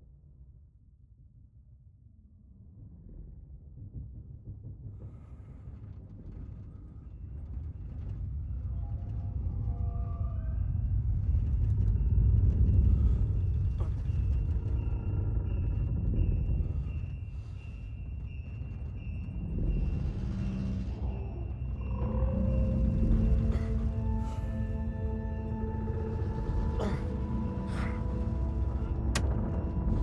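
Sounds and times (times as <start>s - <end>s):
deep rumble: 2.3s - 30.0s.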